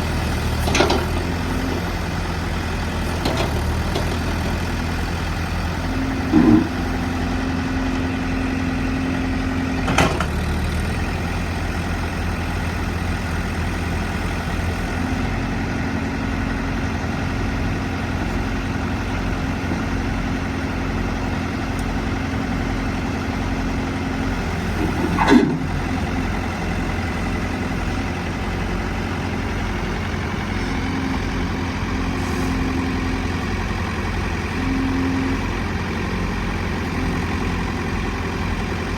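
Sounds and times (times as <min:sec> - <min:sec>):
diesel engine running: 0:00.0 - 0:38.9
engine whine: 0:00.0 - 0:38.9
short clunks: 0:00.6 - 0:01.3, 0:03.0 - 0:04.4, 0:06.1 - 0:07.1, 0:09.8 - 0:10.7, 0:24.6 - 0:26.0.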